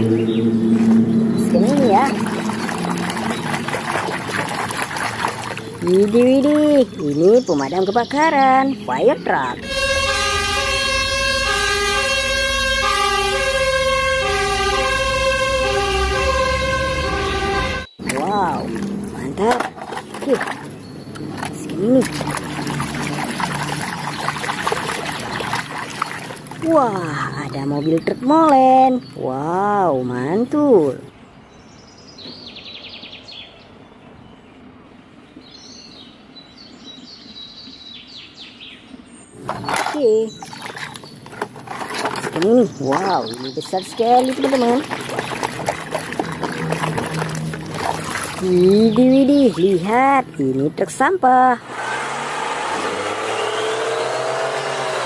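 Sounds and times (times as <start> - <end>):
small birds chirping: 0.0 - 9.8, 16.4 - 51.6
toy fire truck electronic siren: 9.6 - 17.9.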